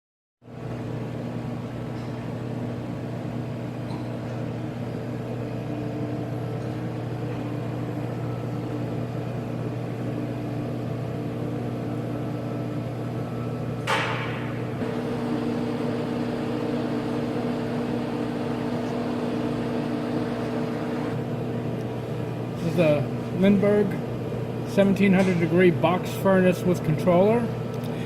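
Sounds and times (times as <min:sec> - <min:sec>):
cooling fans humming: 0:00.5 - 0:28.0
low electrical drone: 0:14.8 - 0:24.9.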